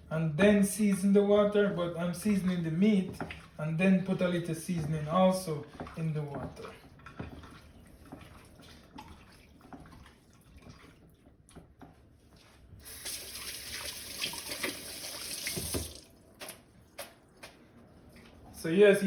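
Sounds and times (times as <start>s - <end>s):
tap running into sink: 13.0s - 16.6s.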